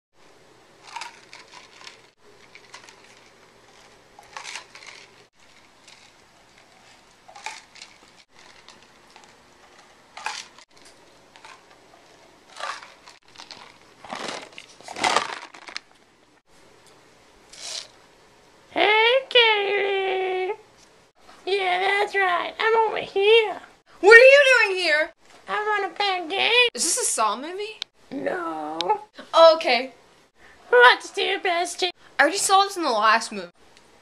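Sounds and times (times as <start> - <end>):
crinkling and rustling: 0.8 - 16.3.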